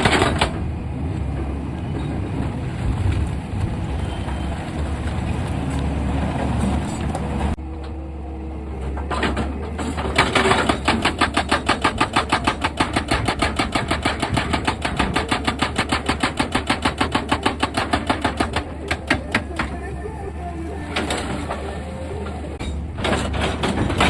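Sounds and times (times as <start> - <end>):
excavator engine running: 0.0 - 24.0
hydraulic rock breaker hammering: 9.0 - 19.8.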